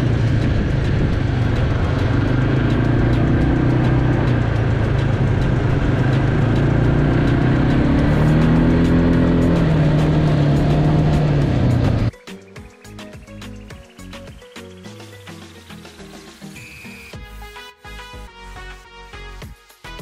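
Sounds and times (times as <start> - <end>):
quad bike engine accelerating: 0.0 - 12.1
quiet music: 0.0 - 20.0.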